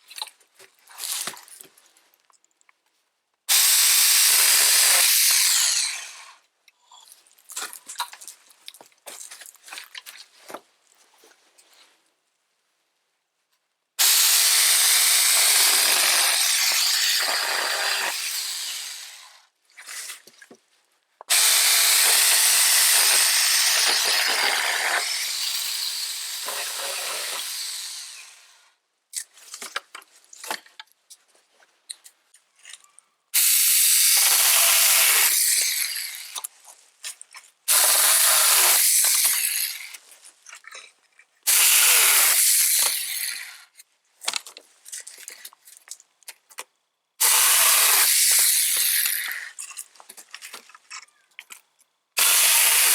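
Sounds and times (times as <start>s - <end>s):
mini chainsaw cutting branches: 3.5s - 6.4s, 14.0s - 19.4s, 21.3s - 28.6s, 33.4s - 36.5s, 37.7s - 40.0s, 41.5s - 43.7s, 47.2s - 49.9s, 52.2s - 52.9s.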